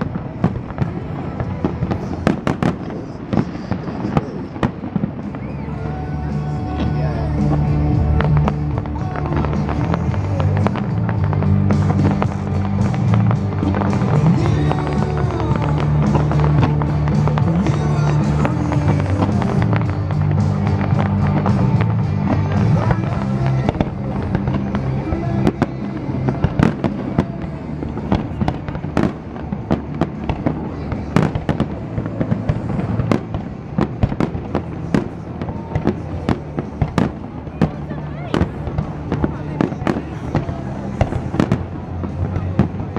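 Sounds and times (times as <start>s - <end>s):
fireworks cracking and popping: 0.0s - 42.9s
loud music: 0.0s - 42.9s.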